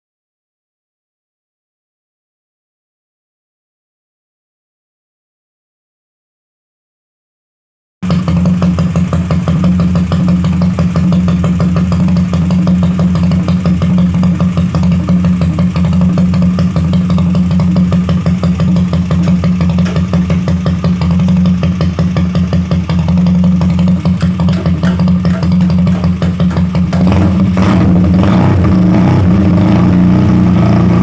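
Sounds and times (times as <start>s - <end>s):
motorcycle engine idling: 8.0s - 29.6s.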